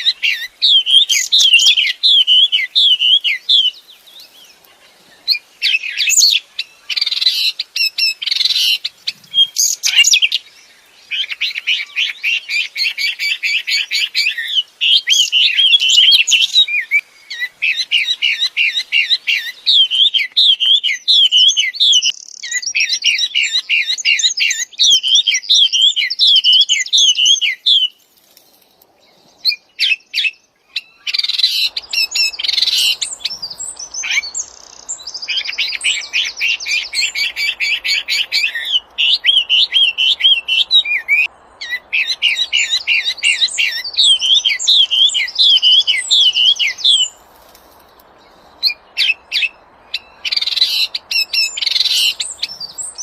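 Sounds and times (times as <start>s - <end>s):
songbird singing whistled trills: 0.0s - 28.0s, 29.1s - 47.2s, 48.3s - 53.0s.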